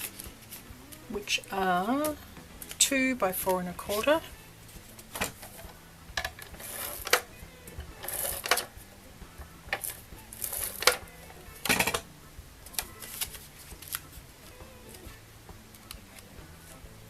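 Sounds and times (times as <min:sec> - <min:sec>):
faint background music: 0:00.0 - 0:17.0
paper rustling: 0:12.7 - 0:14.1.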